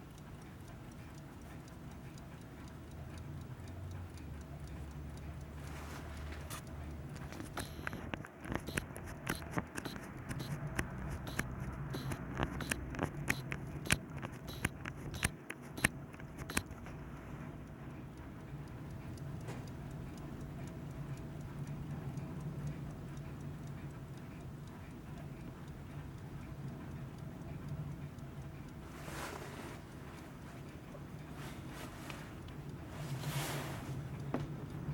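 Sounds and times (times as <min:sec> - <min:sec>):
clock ticking: 0:00.0 - 0:34.9
alarm clock sharp clicks: 0:04.2 - 0:17.0.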